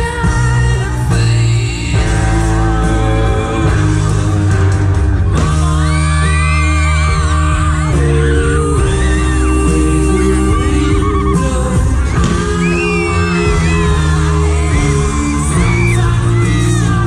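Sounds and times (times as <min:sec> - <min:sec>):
loud music with steady bass: 0:00.0 - 0:17.0
wordless singing: 0:05.2 - 0:17.0.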